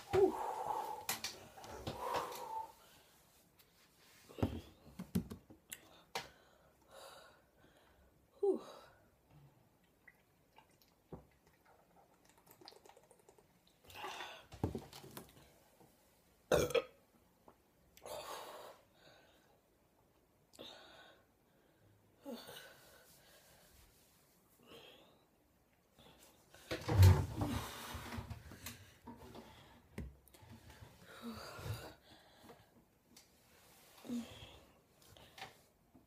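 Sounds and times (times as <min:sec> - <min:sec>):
woman burping: 0:16.5 - 0:17.0.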